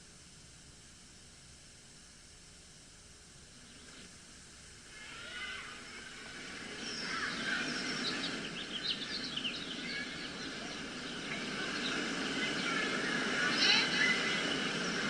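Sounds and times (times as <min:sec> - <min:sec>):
steady rushing background: 0:02.9 - 0:15.0
birds chirping: 0:04.9 - 0:15.0.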